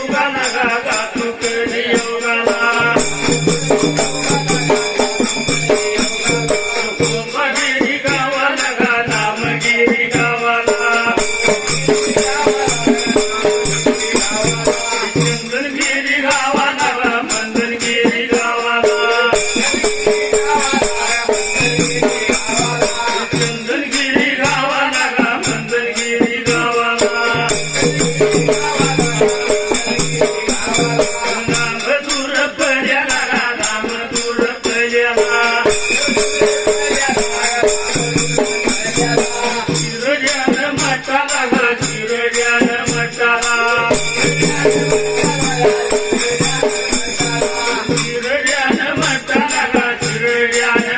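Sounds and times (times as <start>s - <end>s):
jingling rattle: 0.0s - 50.9s
steady repeating drum beat: 0.0s - 50.9s.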